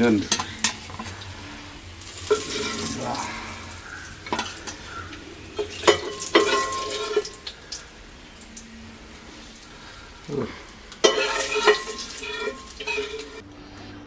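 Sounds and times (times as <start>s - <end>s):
fish sizzling in oil: 0.0s - 13.4s
metal utensil clinking on pan: 0.2s - 1.1s, 5.6s - 7.5s, 11.0s - 13.4s.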